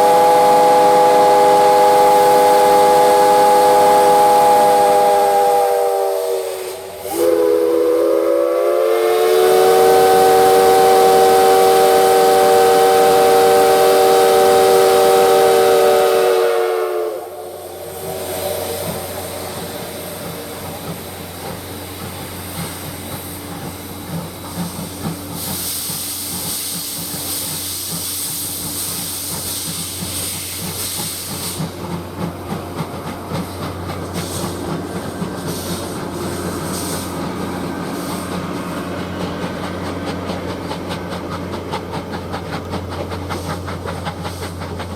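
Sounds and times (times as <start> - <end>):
steam locomotive whistle: 0.0 - 22.7, 32.5 - 40.0
steam hissing: 0.0 - 44.9
train running rhythmic beat: 0.0 - 44.9.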